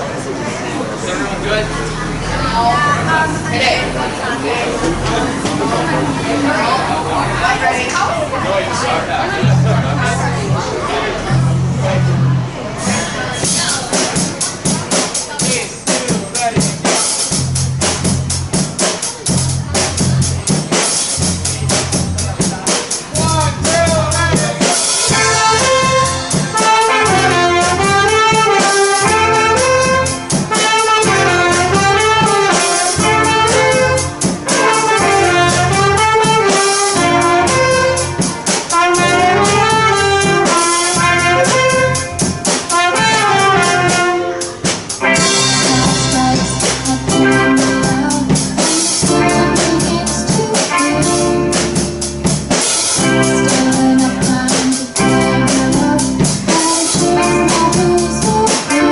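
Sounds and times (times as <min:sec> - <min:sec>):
bass: 0:00.0 - 0:58.9
drum kit: 0:01.4 - 0:08.1, 0:08.7 - 0:58.9
trumpet-like lead melody: 0:23.1 - 0:54.3, 0:55.0 - 0:58.9.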